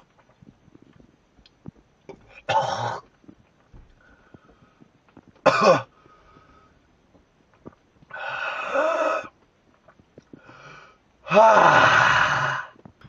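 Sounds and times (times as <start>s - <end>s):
man coughing: 2.5s - 3.0s, 5.5s - 5.9s
man groaning: 11.3s - 12.7s.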